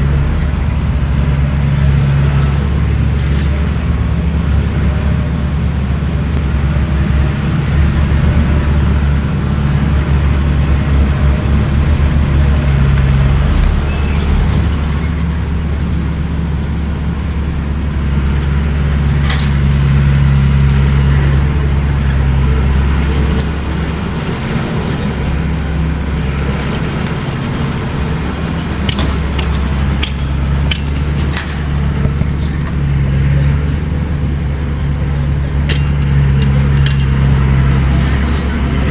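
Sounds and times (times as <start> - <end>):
bulldozer diesel engine running: 0.0 - 38.9
sharp metallic clanks: 28.7 - 32.8, 35.6 - 38.4.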